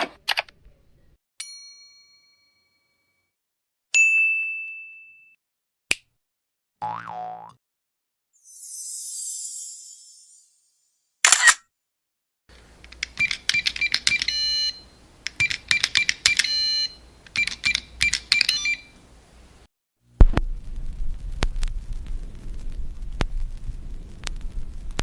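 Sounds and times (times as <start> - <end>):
low rumble with sharp clicks: 20.2 - 25.0.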